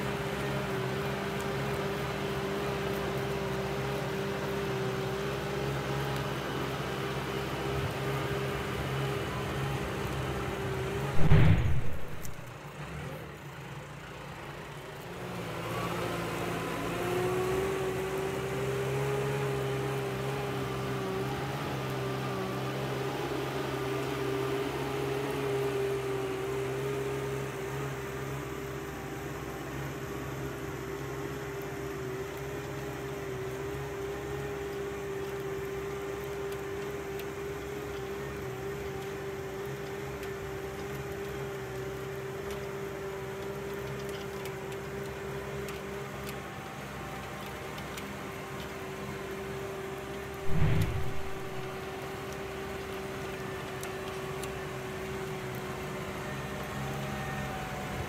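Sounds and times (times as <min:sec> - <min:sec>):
tractor engine droning: 0:07.0 - 0:12.7, 0:48.9 - 0:54.1.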